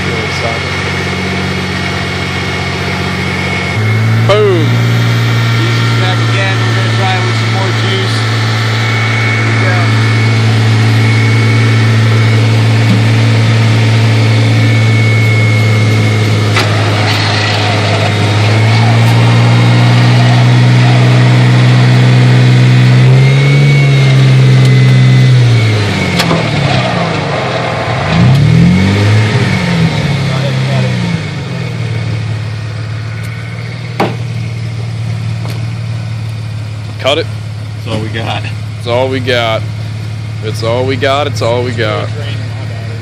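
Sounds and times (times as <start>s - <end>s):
motor drone: 0.0s - 36.4s.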